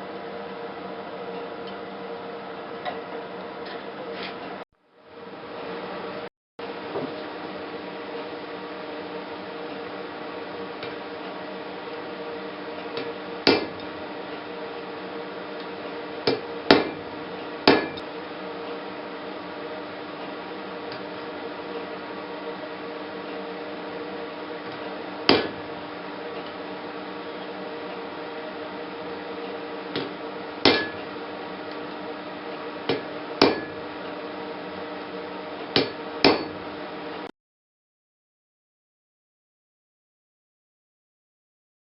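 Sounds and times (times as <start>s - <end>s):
steady background hum: 0.0s - 37.3s
hammer striking metal anvil: 13.5s - 13.9s, 16.3s - 17.1s, 17.7s - 18.0s, 25.3s - 25.6s, 30.0s - 31.1s, 32.9s - 33.8s, 35.8s - 36.6s.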